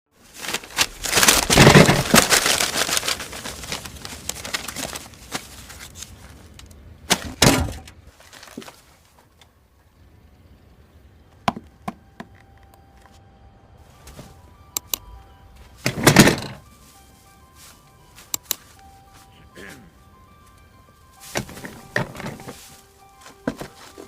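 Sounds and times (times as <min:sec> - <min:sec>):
paper crumpling: 0:00.2 - 0:06.6.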